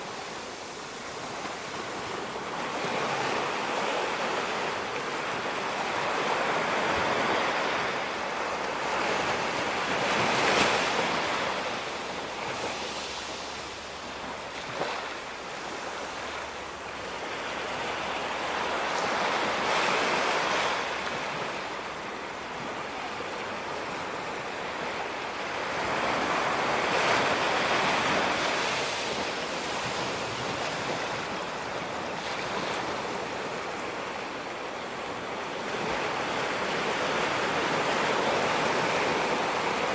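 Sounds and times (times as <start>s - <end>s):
ocean waves breaking: 0.0s - 39.9s.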